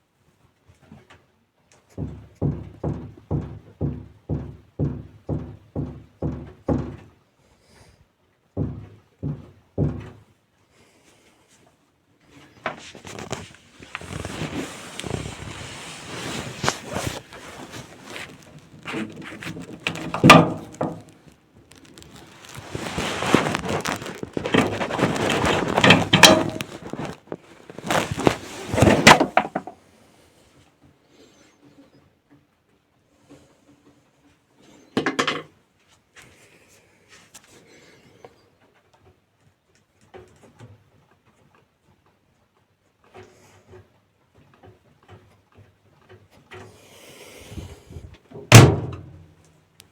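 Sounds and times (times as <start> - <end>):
washing machine drum knocking: 2.0 - 7.0, 8.6 - 10.2.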